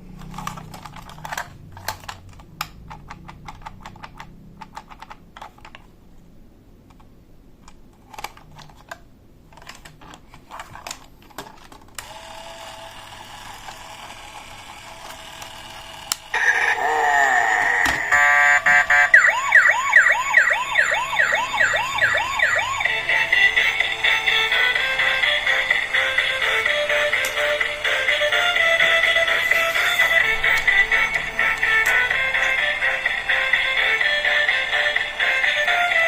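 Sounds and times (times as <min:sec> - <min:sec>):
electronic siren wailing: 0:16.3 - 0:35.9.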